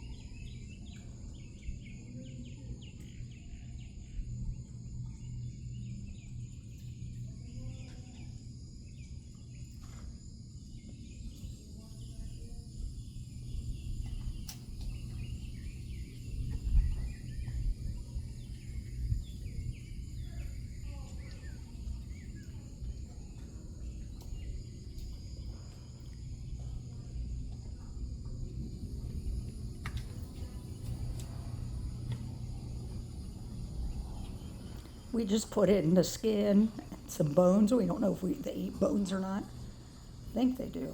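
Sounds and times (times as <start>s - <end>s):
crickets and insects trilling: 0.0s - 40.9s
low even hum: 0.0s - 40.9s
faint clicks: 14.0s - 15.0s, 29.8s - 31.4s.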